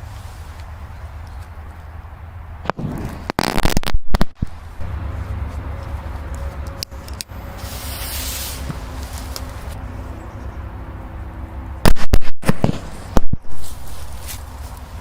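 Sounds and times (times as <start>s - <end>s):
steady low hum: 0.0s - 15.0s
firecrackers banging: 2.6s - 5.2s.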